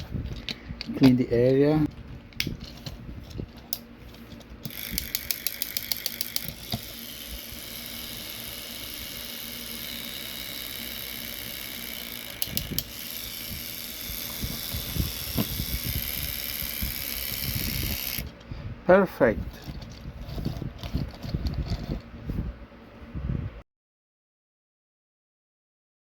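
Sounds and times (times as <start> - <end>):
small electric motor whirring: 2.4 - 18.5.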